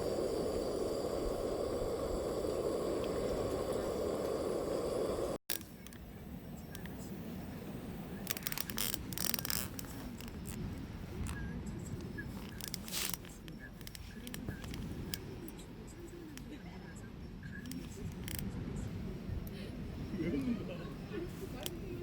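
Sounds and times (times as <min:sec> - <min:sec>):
steady rushing noise: 0:00.0 - 0:05.4
scraping and clicking handling: 0:12.4 - 0:15.2.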